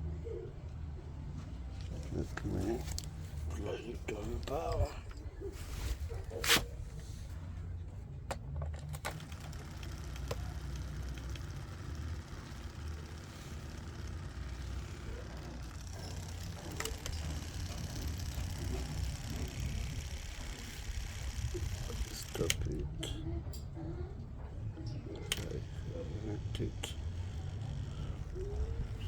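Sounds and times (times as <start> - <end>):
drain pump humming: 9.2 - 22.8.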